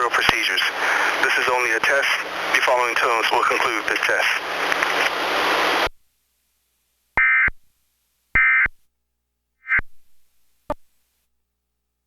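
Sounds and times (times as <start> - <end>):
buzzing digital data bursts: 7.2 - 7.5, 8.4 - 8.7.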